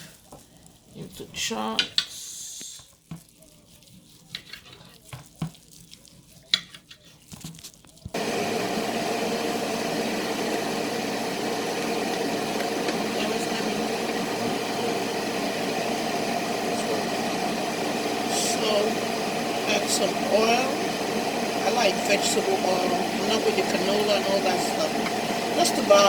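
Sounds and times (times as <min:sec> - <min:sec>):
loud steady rushing noise: 0:08.2 - 0:26.0.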